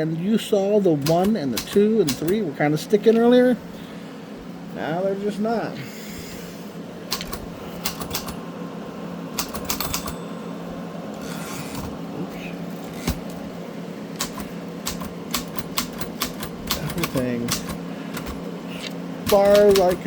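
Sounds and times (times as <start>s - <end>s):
steady low hum: 0.0s - 20.0s
typewriter keys clicking: 1.0s - 2.4s, 7.1s - 8.4s, 9.4s - 10.2s, 14.2s - 18.4s, 19.2s - 20.0s.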